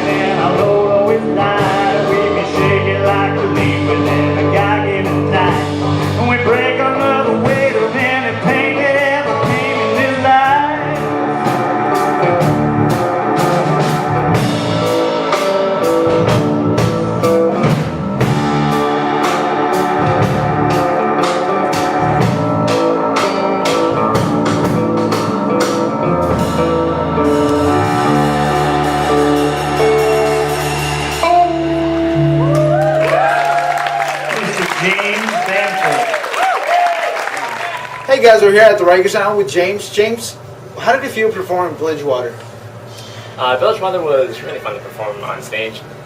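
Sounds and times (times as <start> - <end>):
live band playing: 0.0 - 39.7
drum and cymbal strokes: 9.4 - 32.2.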